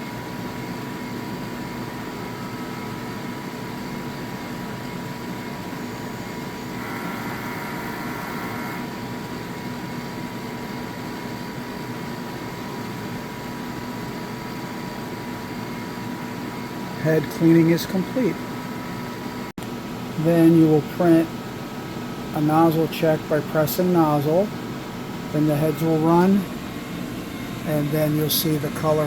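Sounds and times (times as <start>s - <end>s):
printer mechanical hum with whine: 0.0s - 29.0s
bright high whine: 5.8s - 9.4s, 15.7s - 21.4s, 22.2s - 29.0s.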